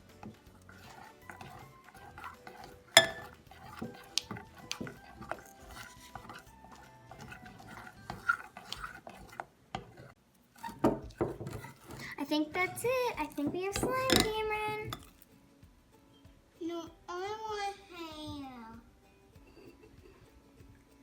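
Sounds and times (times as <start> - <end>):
spoon stirring and scraping slime: 0.0 - 15.3
spoon clinks and knocks: 3.0 - 3.4.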